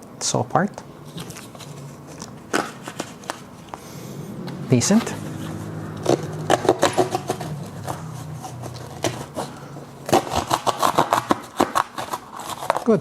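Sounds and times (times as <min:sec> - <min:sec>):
low steady hum: 0:00.0 - 0:12.9
saw cutting cardboard: 0:04.8 - 0:13.0.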